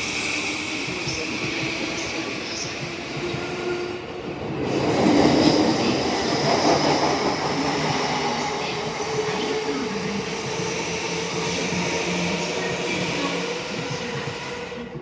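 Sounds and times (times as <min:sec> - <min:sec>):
train hum: 0:00.0 - 0:15.0
train wheels clattering on rails: 0:00.0 - 0:15.0.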